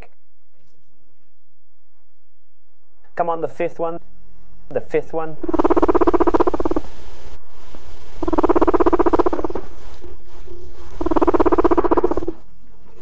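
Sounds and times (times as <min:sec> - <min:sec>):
guinea pig rumbling: 0:05.4 - 0:06.9, 0:08.2 - 0:13.0.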